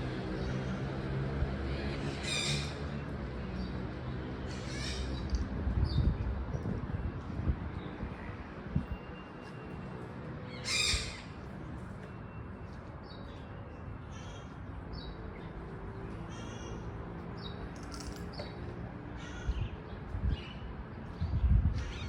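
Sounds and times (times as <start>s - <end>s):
macaw squawking: 10.6s - 11.3s.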